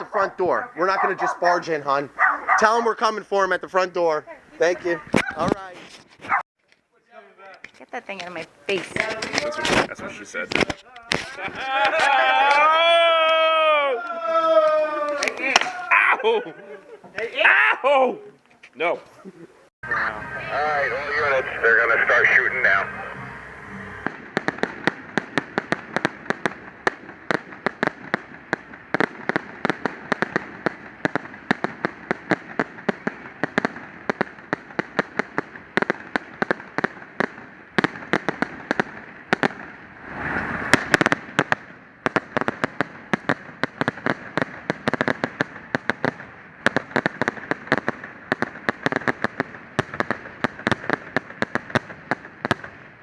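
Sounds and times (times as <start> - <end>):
fireworks bangs and pops: 4.6 - 6.5, 7.6 - 13.5, 14.5 - 15.9, 24.0 - 53.0
fireworks rushing: 7.6 - 17.5, 19.8 - 53.0.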